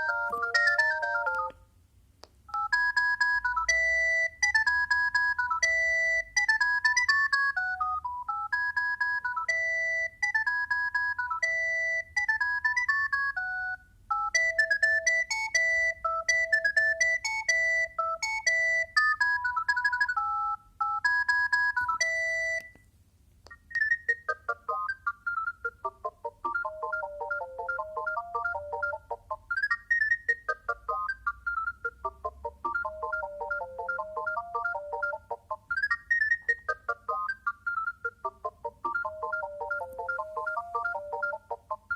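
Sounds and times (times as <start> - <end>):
mobile phone beeping ringtone: 0.0 - 1.6, 2.5 - 22.8, 23.5 - 41.9.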